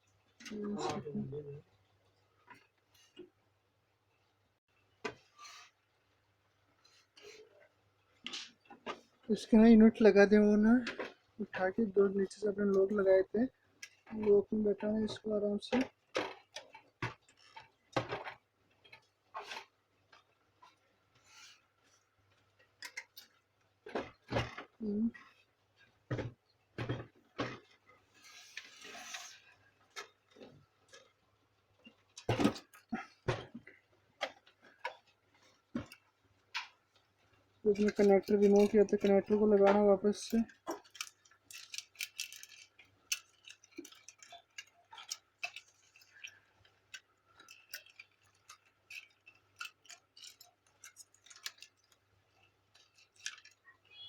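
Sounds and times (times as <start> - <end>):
plastic parts knocking and clicking: 13.8 - 54.0
scraping rustle: 28.0 - 30.6.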